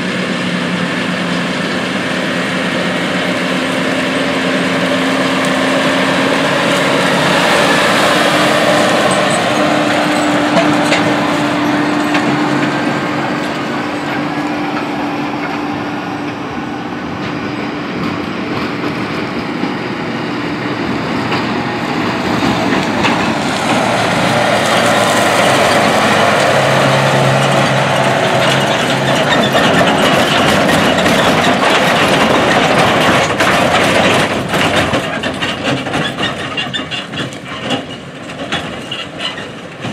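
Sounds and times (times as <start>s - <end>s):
forage harvester engine drone: 0.0s - 39.9s.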